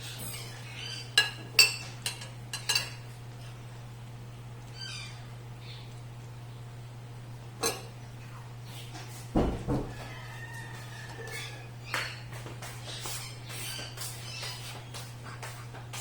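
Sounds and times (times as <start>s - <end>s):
steady low hum: 0.0s - 10.1s
tableware clinking: 1.2s - 3.0s, 7.6s - 8.0s.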